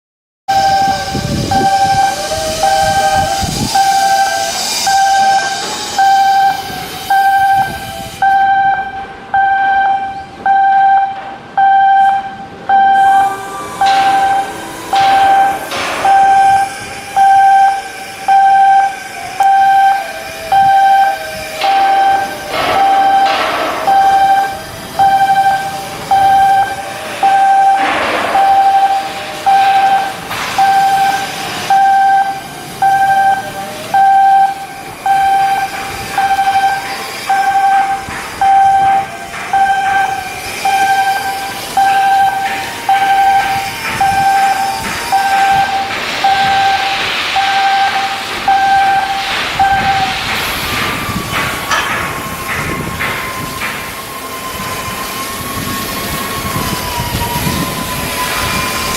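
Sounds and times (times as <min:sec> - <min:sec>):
electronic warning beeper: 0:00.5 - 0:51.7
knocks: 0:21.6 - 0:24.6, 0:27.6 - 0:31.3, 0:35.1 - 0:54.1.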